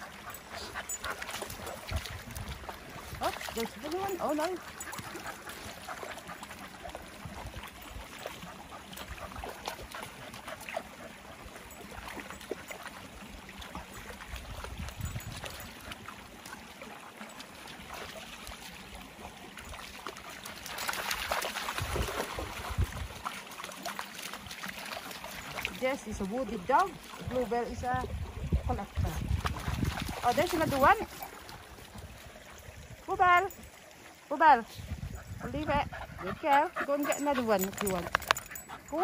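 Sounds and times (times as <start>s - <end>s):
river water running over stones: 0.0s - 39.0s.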